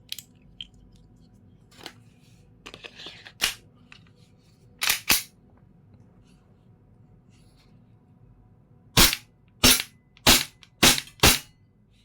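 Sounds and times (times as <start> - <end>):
pistol rattle: 9.0 - 11.5.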